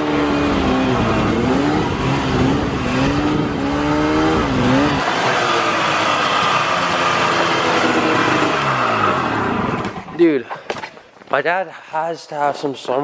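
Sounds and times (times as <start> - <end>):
vehicle engine running: 0.0 - 10.2.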